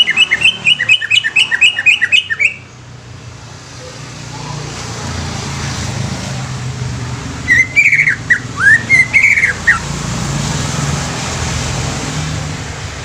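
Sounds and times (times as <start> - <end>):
bird singing whistled notes: 0.0 - 2.7, 7.5 - 9.8.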